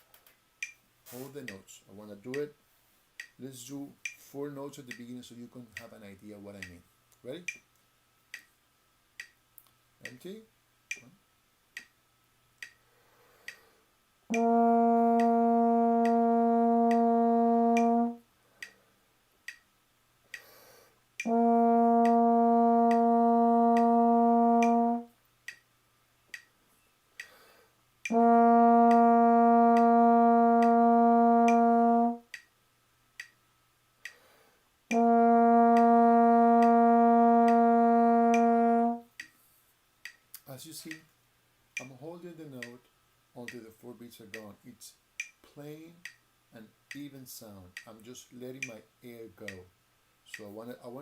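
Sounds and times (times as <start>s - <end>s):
metronome clicking: 0.1s - 0.8s, 1.4s - 1.6s, 3.2s - 4.2s, 4.8s - 6.0s, 6.6s - 8.5s, 9.2s - 10.2s, 10.9s - 11.2s, 11.8s - 12.0s, 13.4s - 13.7s, 14.3s - 18.8s, 19.4s - 19.7s, 21.2s - 25.7s, 26.3s - 32.6s, 33.2s - 33.4s, 34.0s - 34.2s, 34.9s - 39.4s, 40.0s - 41.1s, 41.8s - 42.0s, 42.6s - 43.7s, 45.2s - 46.2s, 46.9s - 47.1s, 47.7s - 49.7s, 50.3s - 50.8s
intake of breath: 12.8s - 13.9s, 20.4s - 21.0s
trombone long notes: 14.3s - 18.3s, 21.2s - 25.2s, 28.1s - 32.3s, 34.9s - 39.1s.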